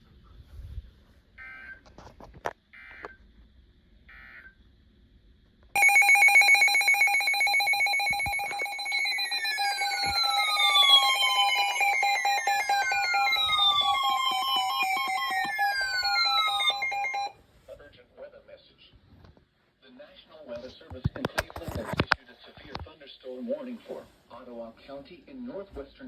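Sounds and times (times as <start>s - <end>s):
electronic alert tone: 5.8s - 17.3s
emergency alert data bursts: 5.8s - 17.3s.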